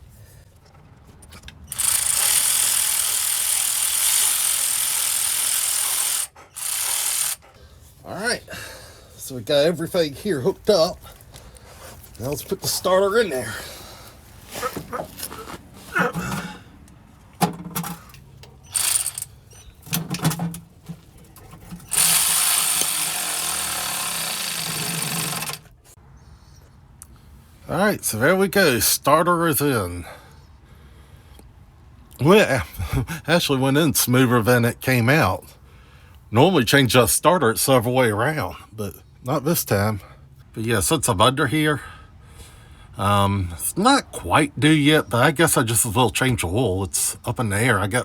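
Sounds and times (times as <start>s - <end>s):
ratchet ratcheting: 1.3s - 7.5s, 17.5s - 25.7s
power tool running: 1.7s - 7.6s, 18.6s - 25.7s.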